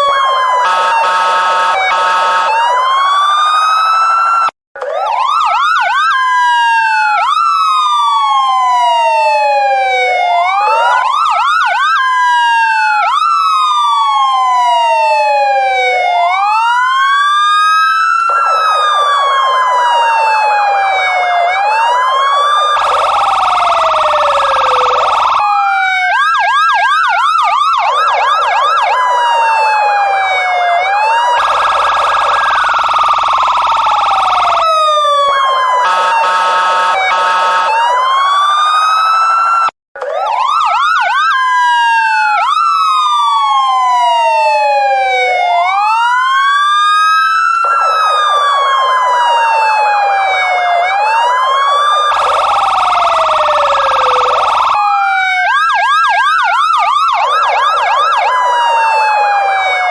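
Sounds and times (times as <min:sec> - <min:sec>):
electronic police siren: 0:00.0 - 0:59.9.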